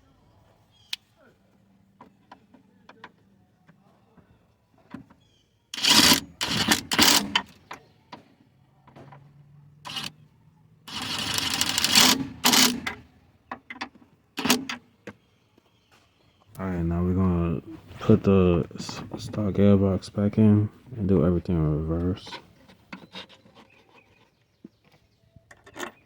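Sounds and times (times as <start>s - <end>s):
socket ratchet clicking: 5.8s - 7.5s.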